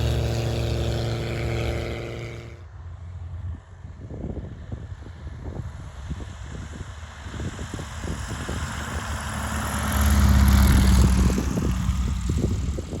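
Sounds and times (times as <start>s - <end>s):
propeller aircraft engine running: 0.0s - 13.0s.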